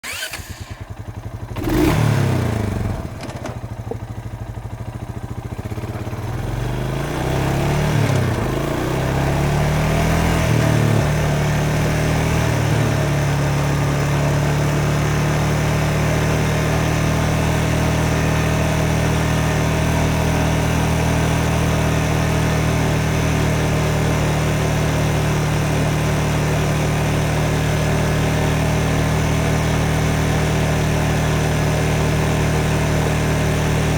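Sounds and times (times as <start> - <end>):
motorcycle starter cranking: 0.0 - 2.2
motorcycle engine revving: 0.0 - 33.9.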